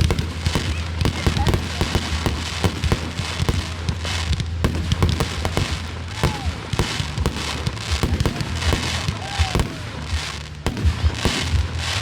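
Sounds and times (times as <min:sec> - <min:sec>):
fireworks crackling: 0:00.0 - 0:12.0
fireworks popping and banging: 0:00.0 - 0:12.0.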